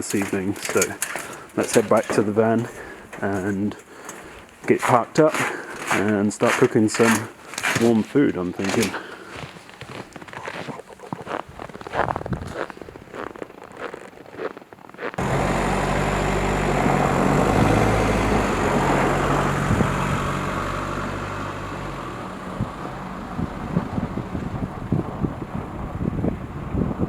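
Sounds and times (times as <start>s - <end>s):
gusty wind noise: 11.3s - 13.2s, 16.6s - 20.7s, 22.3s - 27.0s
van engine hum: 15.2s - 27.0s.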